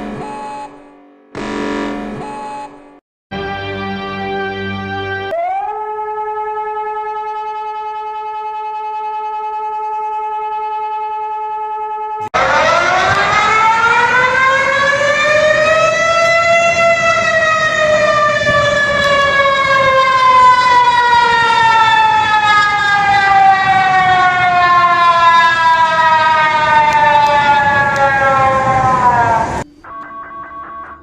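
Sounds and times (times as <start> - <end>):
warning siren wailing: 0.0 - 2.4, 5.0 - 31.0.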